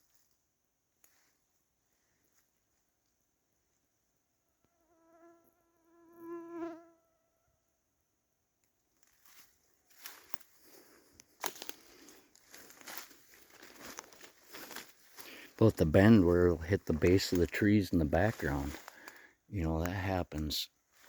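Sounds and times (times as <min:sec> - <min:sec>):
insect buzzing past: 0:04.7 - 0:07.4
dry leaves and twigs crackling: 0:08.6 - 0:21.0.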